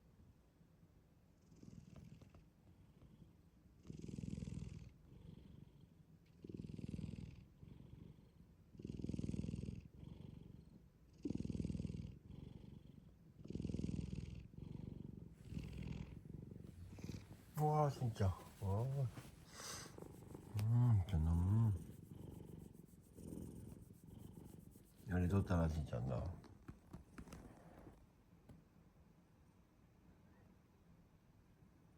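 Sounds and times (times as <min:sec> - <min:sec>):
cat snoring: 0:01.4 - 0:02.4, 0:03.0 - 0:25.1.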